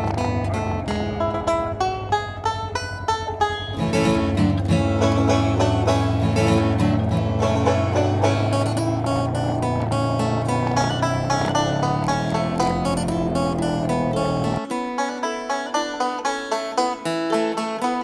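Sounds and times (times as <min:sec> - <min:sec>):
steady bass: 0:00.0 - 0:02.6, 0:03.4 - 0:14.7
banjo: 0:00.0 - 0:18.0
plucked acoustic guitar: 0:00.0 - 0:18.0.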